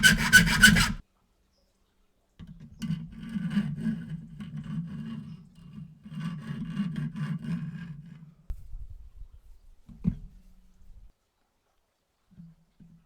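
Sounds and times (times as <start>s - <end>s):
hand rasping strokes on hard material: 0.0s - 1.0s, 2.9s - 8.4s.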